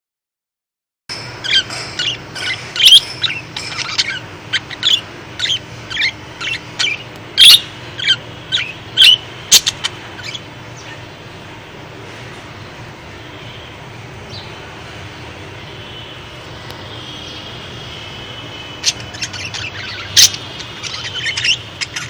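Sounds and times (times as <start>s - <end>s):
lovebirds chirping: 1.2s - 11.4s, 15.9s - 22.0s.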